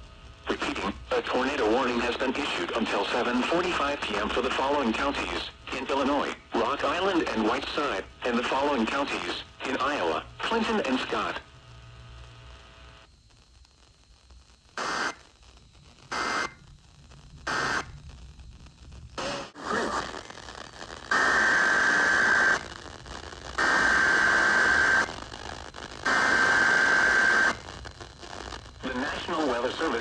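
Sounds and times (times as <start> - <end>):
static hiss: 0.0 - 30.0
data bursts over radio: 0.4 - 13.1, 14.6 - 16.7, 17.4 - 18.1, 19.2 - 30.0.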